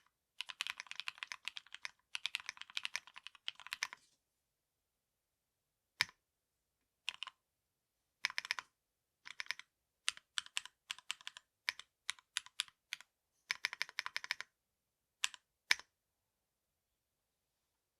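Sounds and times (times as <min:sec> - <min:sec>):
typing on mechanical keyboard: 0:00.0 - 0:04.0, 0:07.1 - 0:07.4, 0:08.2 - 0:08.7, 0:09.3 - 0:14.5, 0:15.2 - 0:15.9.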